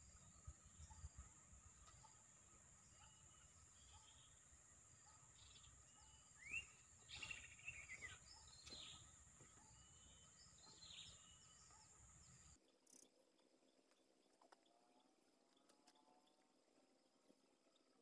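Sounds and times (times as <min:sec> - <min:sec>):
birds chirping: 0:00.0 - 0:12.6
steady high-pitched hiss: 0:00.0 - 0:18.0
rising whistled bird calls: 0:05.4 - 0:09.0.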